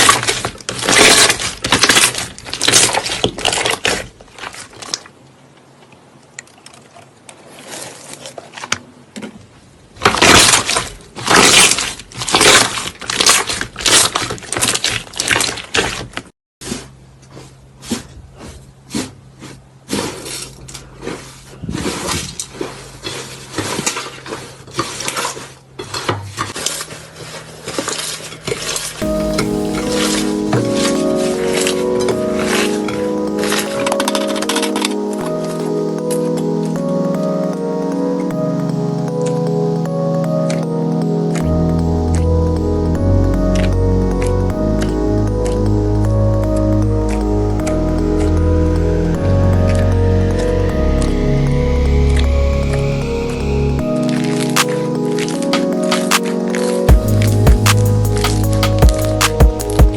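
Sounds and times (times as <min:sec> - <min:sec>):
music: 0:29.0 - 0:59.9.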